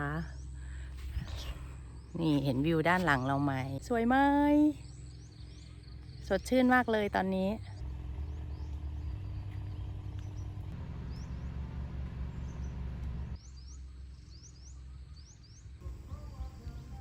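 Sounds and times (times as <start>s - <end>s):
small birds chirping: 0.0s - 17.0s
steady low rumble: 0.0s - 17.0s.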